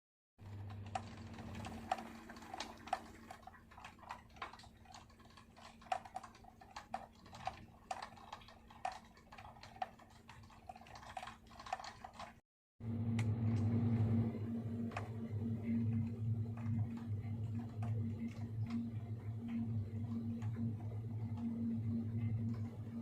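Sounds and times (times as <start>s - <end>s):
faint steady hum: 12.8s - 23.0s.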